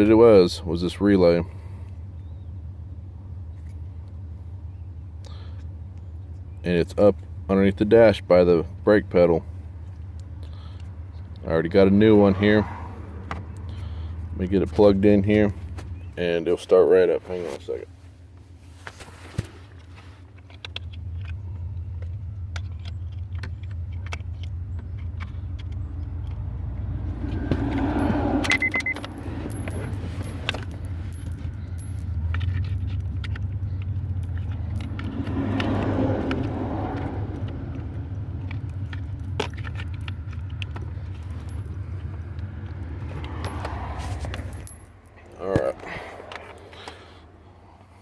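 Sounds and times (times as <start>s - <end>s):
keys and metal parts jangling: 27.7s - 45.2s.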